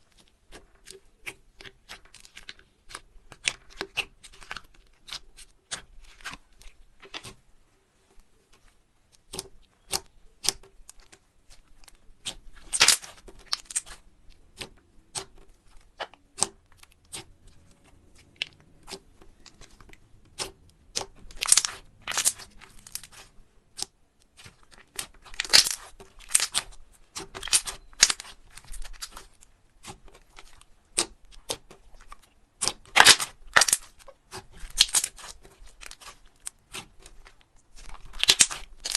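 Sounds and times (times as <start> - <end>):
slime crackling: 8.4 - 38.9
slime popping and clicking: 38.1 - 38.9.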